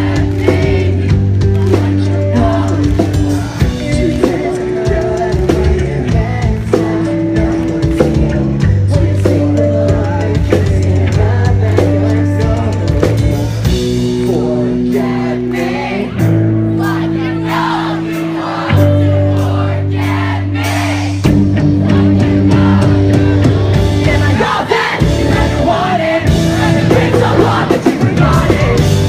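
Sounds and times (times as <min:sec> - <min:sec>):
loud drum kit: 0:00.0 - 0:29.0
pop-punk band playing live: 0:00.0 - 0:29.0
sung vocals: 0:00.0 - 0:29.0.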